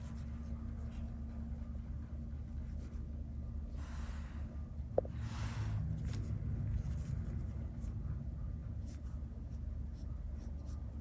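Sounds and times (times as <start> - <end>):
brush rustling on paper: 0.0 - 3.2, 6.0 - 11.0
low electrical hum: 0.0 - 11.0.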